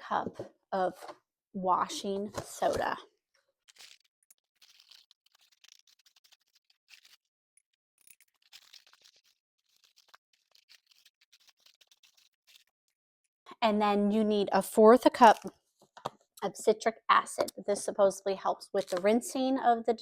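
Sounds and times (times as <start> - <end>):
powder scraping and rustling: 3.7 - 7.3, 8.0 - 12.8.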